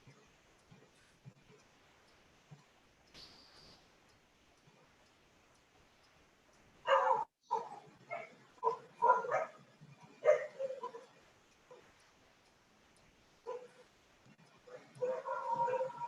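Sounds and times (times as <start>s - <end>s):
dog barking: 6.8s - 9.6s, 10.2s - 11.1s, 13.4s - 13.8s, 14.7s - 16.0s.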